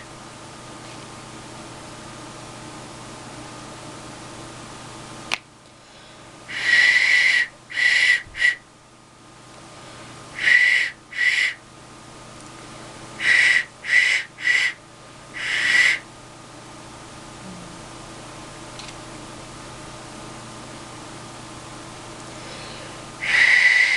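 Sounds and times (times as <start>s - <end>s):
clay whistle toots: 6.6s - 8.6s.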